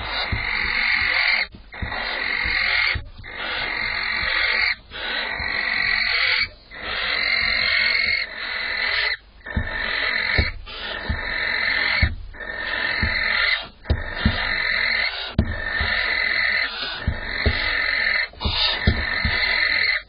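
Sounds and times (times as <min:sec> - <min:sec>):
dull knock: 0:00.0 - 0:06.5, 0:09.4 - 0:20.0
barn owl rasping hisses: 0:00.0 - 0:20.0.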